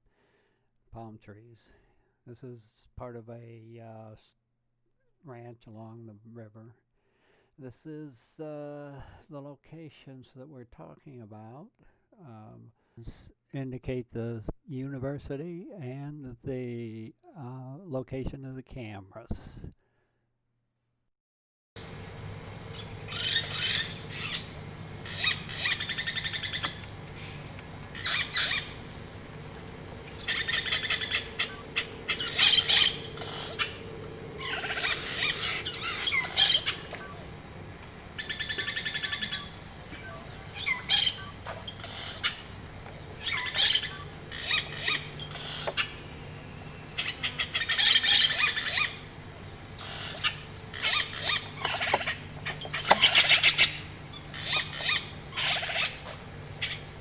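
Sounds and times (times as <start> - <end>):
bird calls with rapid trills: 21.8 - 57.0
high insect buzz: 21.8 - 57.0.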